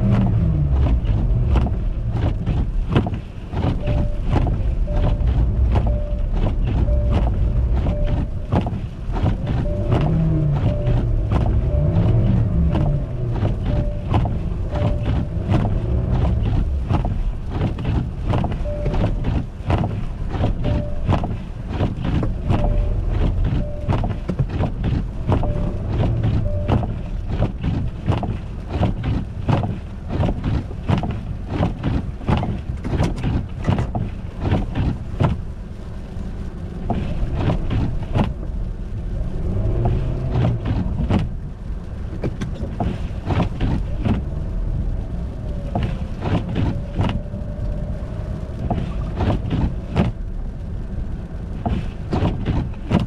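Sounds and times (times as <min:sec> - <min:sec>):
car rumbling on icy road: 0:00.0 - 0:53.0
faint beeping tone: 0:03.8 - 0:08.5, 0:09.4 - 0:14.1, 0:18.6 - 0:19.2, 0:22.4 - 0:23.0, 0:23.6 - 0:23.9, 0:25.4 - 0:25.8, 0:26.4 - 0:26.8.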